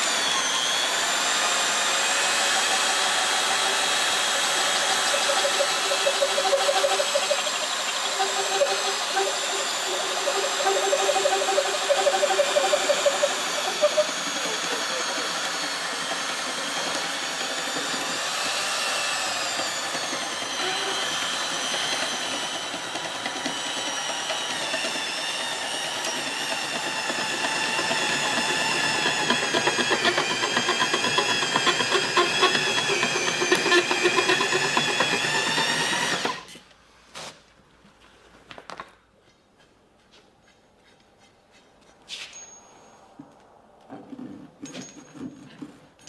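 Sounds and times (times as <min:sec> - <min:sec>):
electric power drill running: 0:00.0 - 0:36.6.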